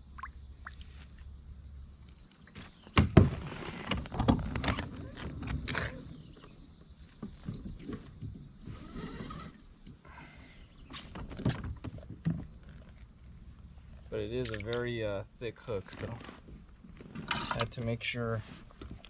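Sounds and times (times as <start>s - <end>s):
knock on plastic kayak: 2.9s - 3.4s.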